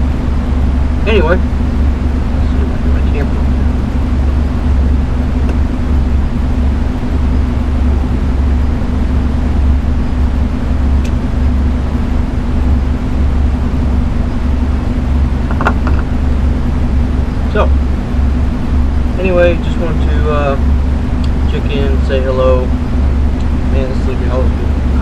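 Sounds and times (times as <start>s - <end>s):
loud low hum and rumble: 0.0s - 25.0s.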